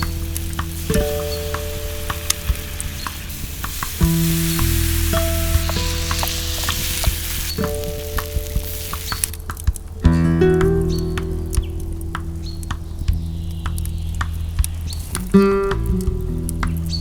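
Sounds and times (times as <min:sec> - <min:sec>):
hiss of water: 0:00.0 - 0:09.3
slow chords with deep bass: 0:00.0 - 0:17.0
small crackling clicks: 0:00.0 - 0:17.0.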